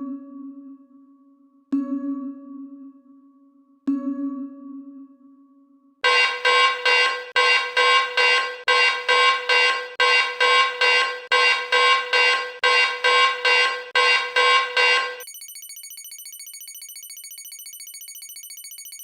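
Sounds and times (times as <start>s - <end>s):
pulsing buzzing alarm: 6.0s - 19.0s.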